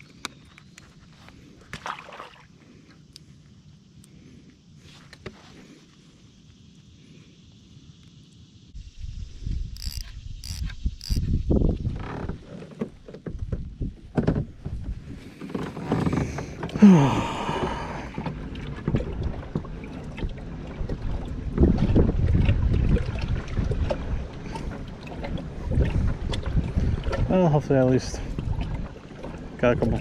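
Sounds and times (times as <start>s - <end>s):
wind rumbling on microphone: 8.5s - 30.0s
gear knocking and rubbing: 9.8s - 11.2s.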